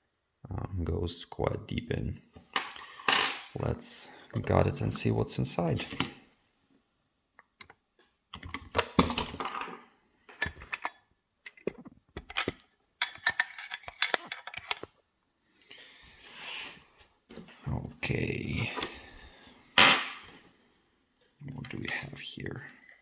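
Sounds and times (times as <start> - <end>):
metal tools and lock clattering: 13.0 - 14.9.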